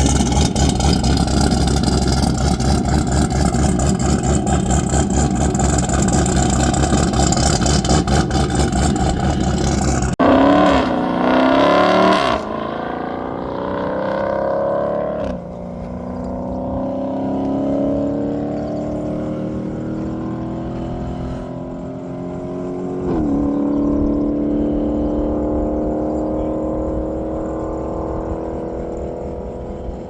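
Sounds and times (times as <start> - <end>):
rough clattering engine: 0.0 - 13.0
race car engine accelerating: 0.0 - 30.0.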